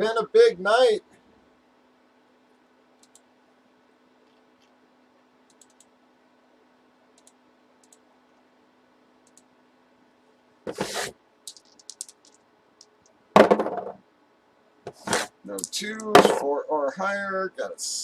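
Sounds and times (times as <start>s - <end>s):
low steady hum: 0.0s - 18.0s
keyboard and mouse clicks: 3.0s - 3.2s, 5.5s - 5.9s, 7.2s - 8.0s, 11.5s - 13.2s.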